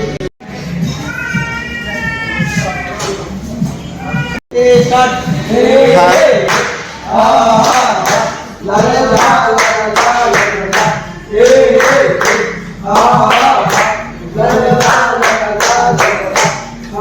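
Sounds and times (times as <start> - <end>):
group singing in chorus: 5.3 - 17.0
rhythmic hand clapping: 5.9 - 16.9.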